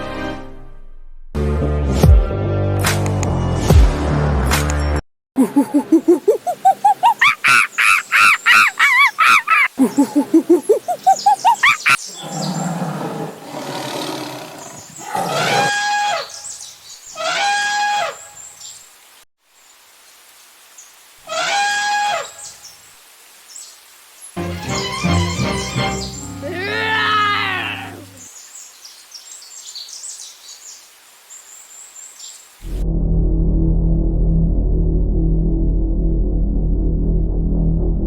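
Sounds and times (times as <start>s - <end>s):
long animal calls: 5.4s - 16.3s, 26.4s - 28.3s.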